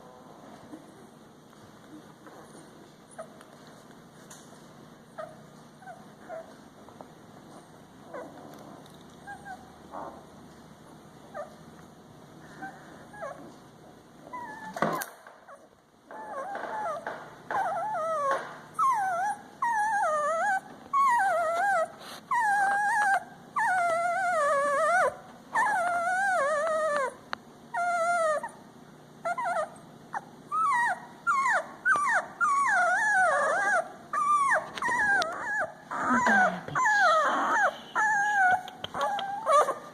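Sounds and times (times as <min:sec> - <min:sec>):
puppies whimpering and crying: 0:09.2 - 0:10.4, 0:12.4 - 0:13.6, 0:14.2 - 0:39.9.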